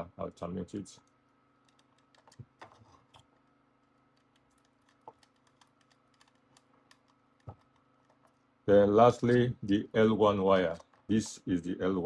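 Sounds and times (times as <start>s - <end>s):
small clicks and taps: 1.0s - 8.5s
screwdriver handling wire: 1.1s - 8.4s.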